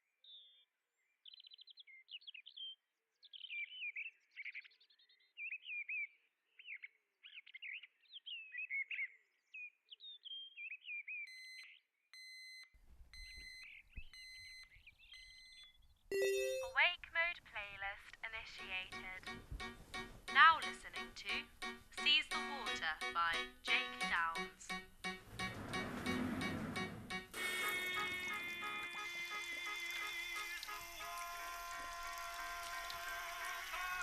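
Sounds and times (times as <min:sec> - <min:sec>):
songbird chirping and warbling: 0:00.2 - 0:11.9
repeated electronic beep: 0:16.1 - 0:16.8.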